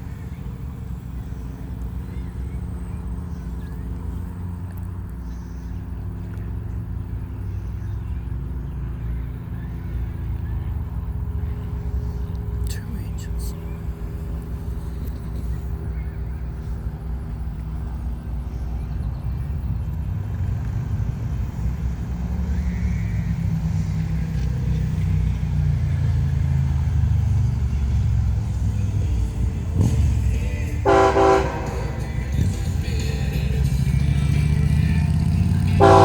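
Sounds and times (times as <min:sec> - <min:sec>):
train rumble: 0:00.0 - 0:36.0
locomotive air horn honk: 0:30.8 - 0:33.0, 0:35.7 - 0:36.0.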